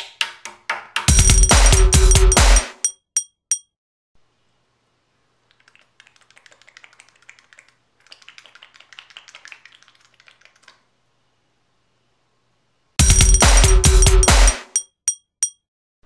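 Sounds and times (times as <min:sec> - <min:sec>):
faint rapid clicking and tapping: 0:05.4 - 0:10.9.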